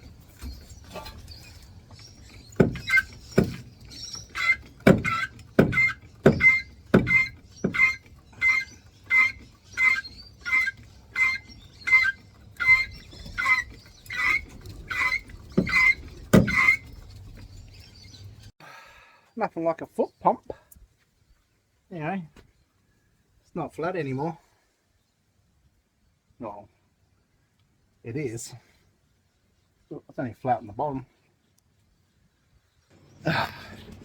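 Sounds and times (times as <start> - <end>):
foot pump squeaking and thumping: 0.0 - 18.5.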